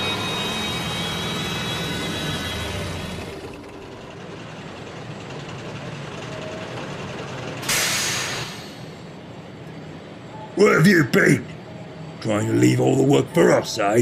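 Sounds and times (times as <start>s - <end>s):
railway engines rumbling: 0.0s - 14.0s
locomotive hiss: 7.6s - 9.5s.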